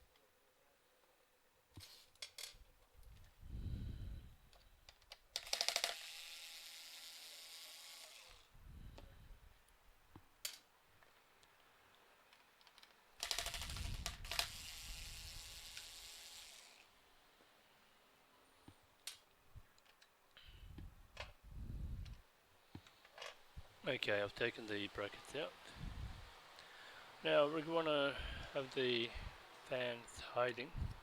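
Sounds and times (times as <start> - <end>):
plastic parts and screws clicking: 1.8 - 3.4, 4.4 - 8.4, 12.3 - 16.8, 19.0 - 20.2.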